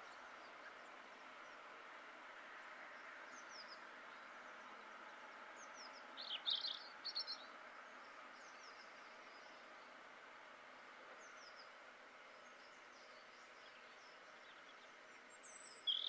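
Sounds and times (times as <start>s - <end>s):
background hiss: 0.0s - 16.0s
small birds chirping: 2.9s - 10.0s, 11.1s - 16.0s.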